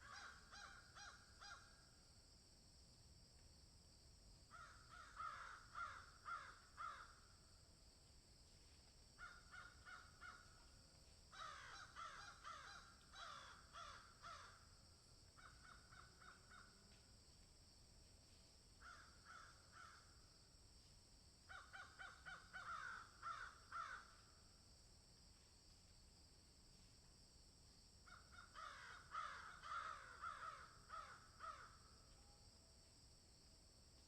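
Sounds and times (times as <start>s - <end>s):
crows cawing: 0.0s - 1.7s, 4.5s - 7.3s, 9.2s - 10.6s, 11.3s - 14.6s, 15.4s - 16.7s, 18.8s - 20.1s, 21.5s - 24.2s, 28.1s - 31.8s.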